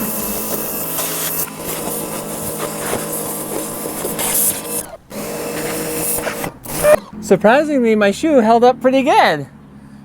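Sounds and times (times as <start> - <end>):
high-pressure water jet hissing: 0.0 - 7.0
pressure washer pump humming: 0.0 - 7.3.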